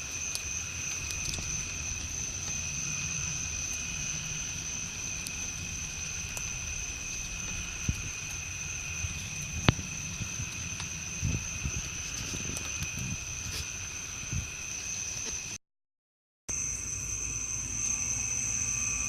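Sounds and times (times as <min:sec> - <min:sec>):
continuous low rumble: 0:00.0 - 0:15.6, 0:16.5 - 0:19.0
insect chorus: 0:00.0 - 0:15.6, 0:16.5 - 0:19.0.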